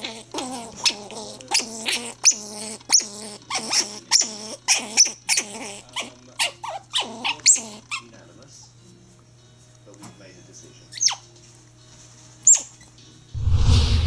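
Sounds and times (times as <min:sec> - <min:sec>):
dog whining and grumbling: 0:00.0 - 0:08.1.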